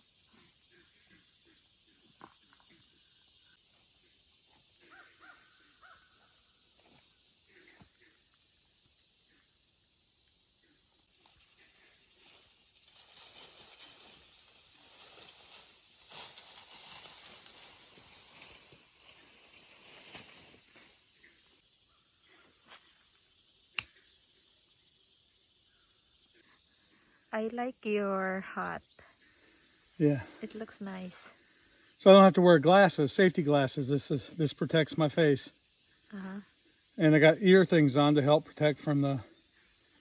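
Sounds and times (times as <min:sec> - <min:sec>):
faint high insect hum: 0:00.0 - 0:40.0
steady high hiss: 0:08.6 - 0:21.6, 0:27.3 - 0:40.0.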